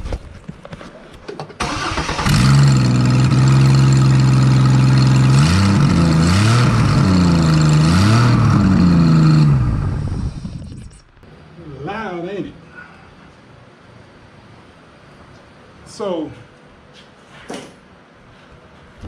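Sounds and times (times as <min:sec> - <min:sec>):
starter cranking: 0:01.6 - 0:11.0
car engine running loud: 0:02.0 - 0:10.8.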